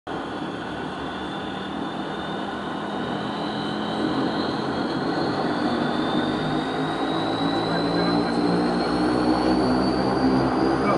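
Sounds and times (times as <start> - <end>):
turboprop engines running: 0.1 - 10.9.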